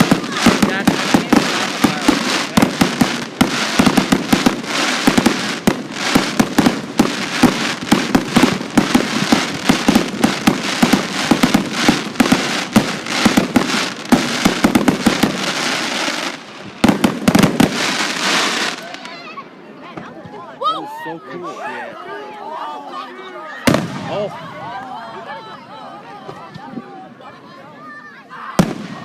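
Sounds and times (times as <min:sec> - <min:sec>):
fireworks bangs: 0:00.0 - 0:19.2, 0:23.6 - 0:24.6, 0:28.6 - 0:29.0
fireworks crackling: 0:00.0 - 0:19.4, 0:23.7 - 0:24.5, 0:28.6 - 0:29.0.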